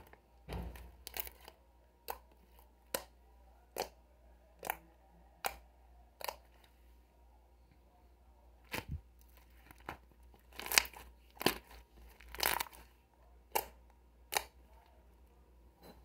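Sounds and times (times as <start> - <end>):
crackling and tearing sounds: 8.7 - 13.7.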